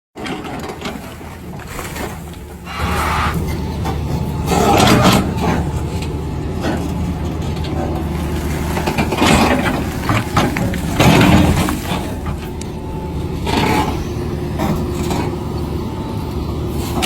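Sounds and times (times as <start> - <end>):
excavator diesel engine running: 0.2 - 17.0
machine scraping and clatter: 0.2 - 17.0.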